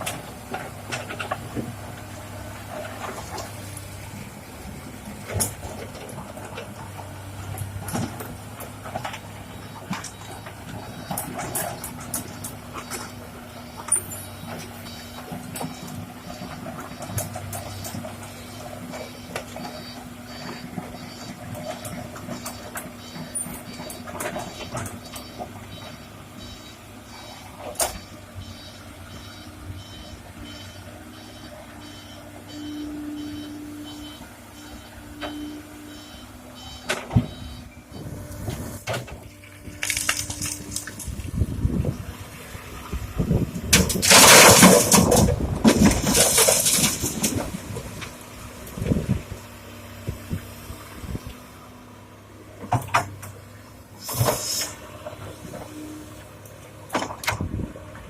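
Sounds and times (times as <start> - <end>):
diesel engine running: 0.0 - 58.0
warning alarm beeping: 17.7 - 38.7.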